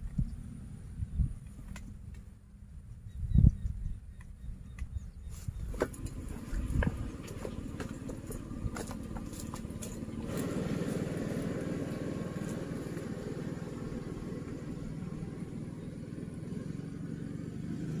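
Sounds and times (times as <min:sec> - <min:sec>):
small engine running: 0:05.8 - 0:18.0.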